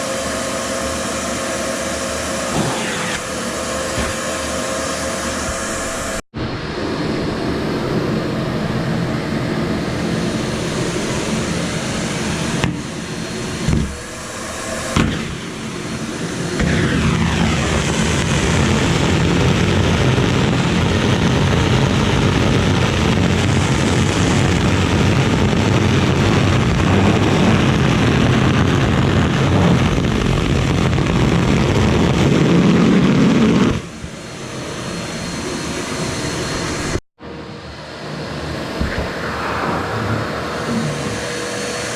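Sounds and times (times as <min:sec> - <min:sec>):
shop vac running: 0:00.0 - 0:06.2
knocks: 0:13.7 - 0:14.0.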